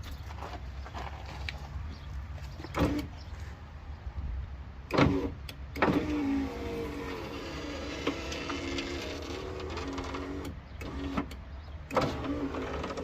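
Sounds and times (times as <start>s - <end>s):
power window motor whining: 4.9s - 13.0s.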